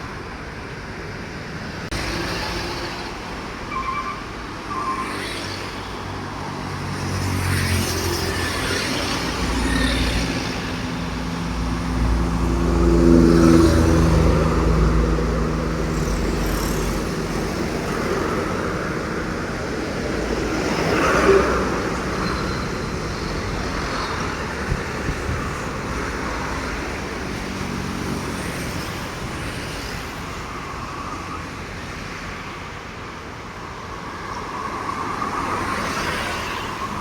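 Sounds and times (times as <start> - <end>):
traffic: 0.0 - 37.0
short high beeps: 3.7 - 5.5.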